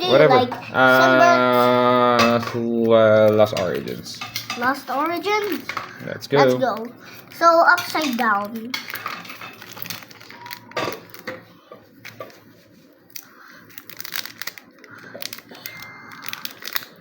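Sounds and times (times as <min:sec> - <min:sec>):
foil pack crinkling: 0:06.5 - 0:17.0.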